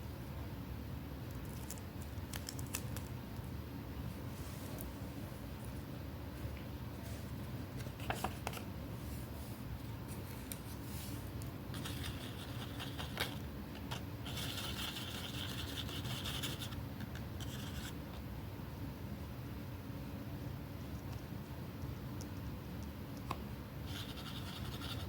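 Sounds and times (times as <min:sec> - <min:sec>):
scratching and rubbing on paper: 0:10.1 - 0:16.8, 0:17.4 - 0:18.0, 0:23.8 - 0:25.0.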